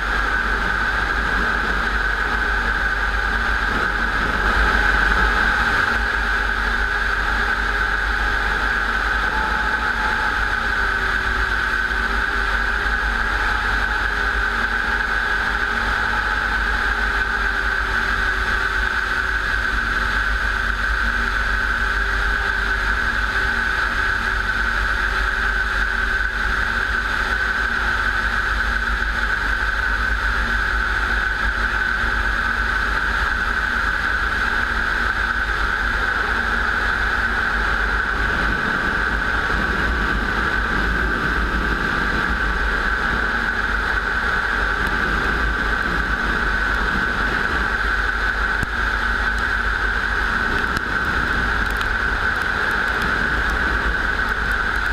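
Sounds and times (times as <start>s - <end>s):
high engine whine: 0.0s - 54.9s
propeller aircraft engine drone: 0.0s - 54.9s.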